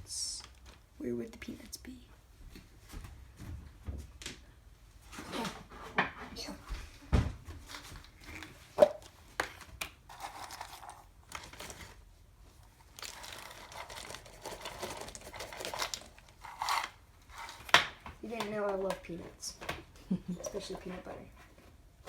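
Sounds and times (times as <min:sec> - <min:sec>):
plastic packaging crinkling: 0:07.7 - 0:12.1, 0:12.7 - 0:17.9.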